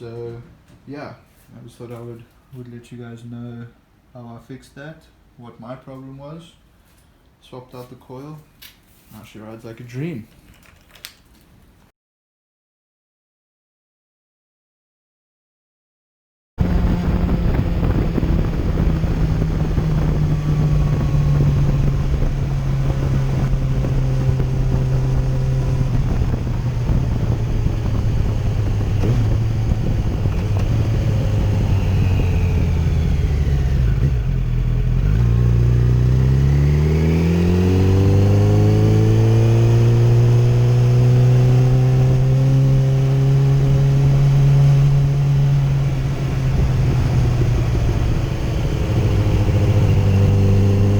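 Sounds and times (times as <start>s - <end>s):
motorcycle engine running: 16.6s - 50.9s.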